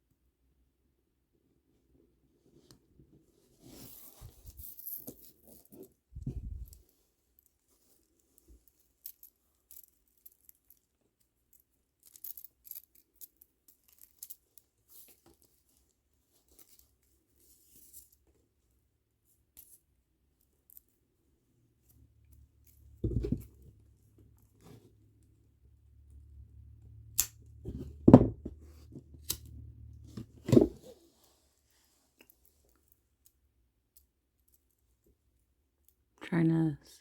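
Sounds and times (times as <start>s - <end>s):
cord rustling: 3.5s - 18.4s.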